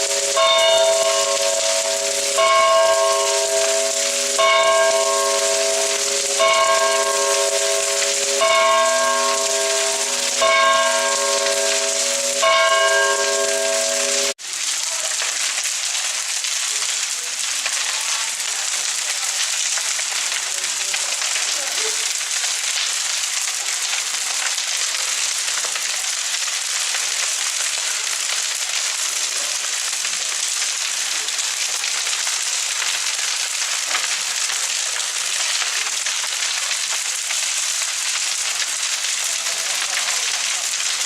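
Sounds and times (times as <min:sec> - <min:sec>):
church bell striking: 0:00.0 - 0:14.4
hiss with crackling: 0:00.0 - 0:41.0.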